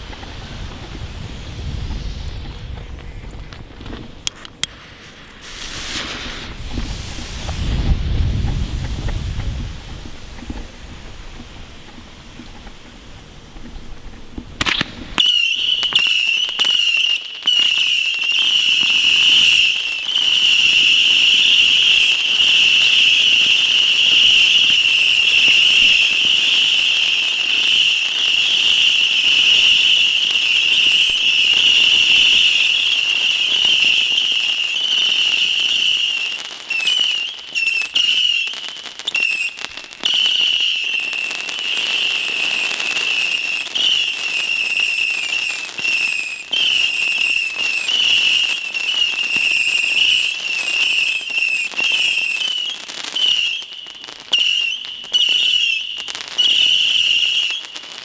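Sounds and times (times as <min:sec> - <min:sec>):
firework cracks and pops: 0:00.0 - 0:58.0
shrill firework whistle: 0:14.6 - 0:58.0.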